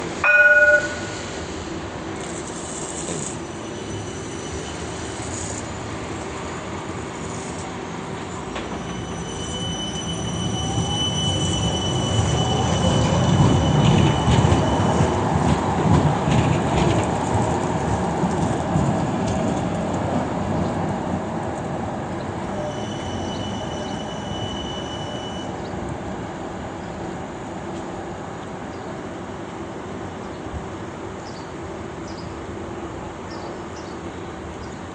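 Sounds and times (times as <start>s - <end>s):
tram moving off and passing: 0.0s - 34.9s
wheels squealing: 2.8s - 5.7s, 8.7s - 15.4s, 22.5s - 25.6s.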